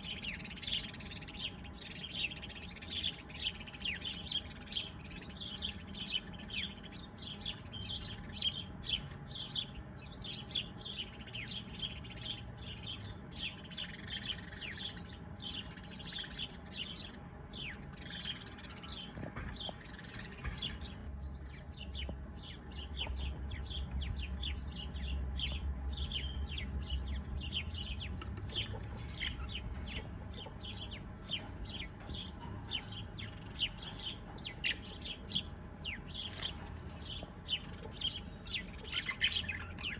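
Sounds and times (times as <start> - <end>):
birds chirping: 0.0 - 39.9
faint low rumble: 18.5 - 39.9.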